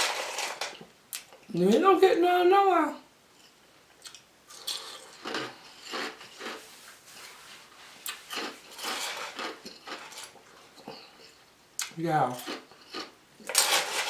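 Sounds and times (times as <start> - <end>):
ice being crunched and chewed: 4.0 - 6.6, 8.0 - 11.4, 12.3 - 14.0.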